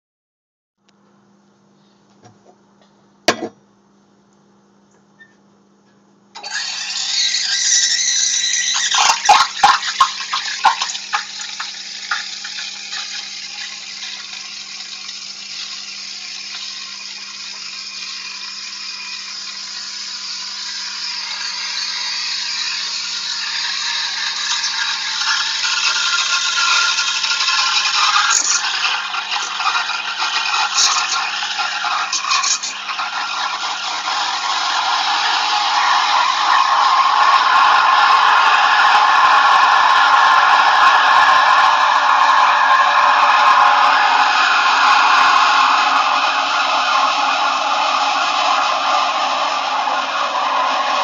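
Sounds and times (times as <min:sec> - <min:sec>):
sputtering crackles: 0:06.4 - 0:37.3
steam wand hissing: 0:06.4 - 0:51.0.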